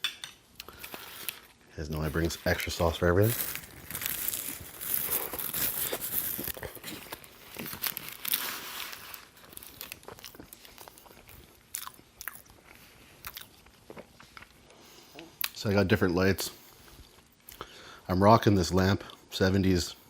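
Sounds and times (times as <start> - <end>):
crunching burger bite: 9.5 - 12.6
wet chewing: 9.6 - 14.8.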